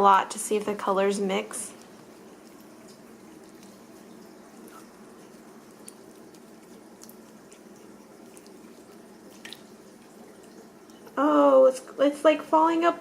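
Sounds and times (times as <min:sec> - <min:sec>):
slime squelching by hand: 0:00.7 - 0:11.2.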